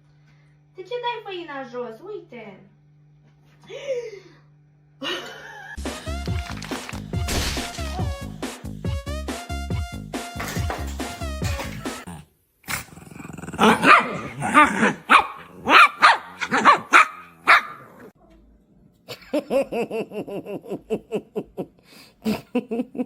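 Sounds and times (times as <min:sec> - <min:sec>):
dog barking and growling: 0:11.5 - 0:18.2.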